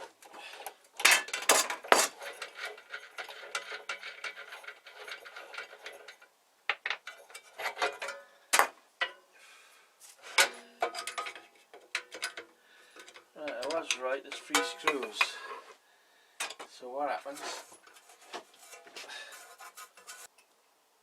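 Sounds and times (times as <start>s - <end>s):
clicks scrapes and metallic rattles: 0.0s - 9.2s, 10.1s - 15.8s, 16.4s - 20.5s.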